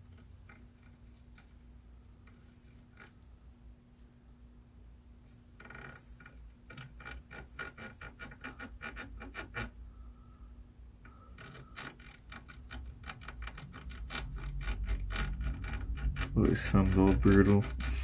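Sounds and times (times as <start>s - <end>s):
hand tool scratching and scraping: 11.1s - 18.0s.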